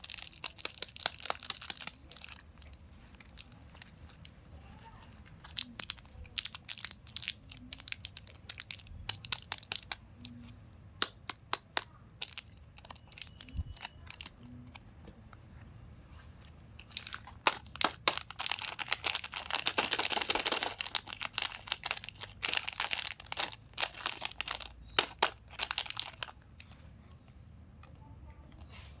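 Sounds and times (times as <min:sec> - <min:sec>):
wrappers crinkling and tearing: 0:00.0 - 0:10.4, 0:12.2 - 0:14.7, 0:16.8 - 0:26.8.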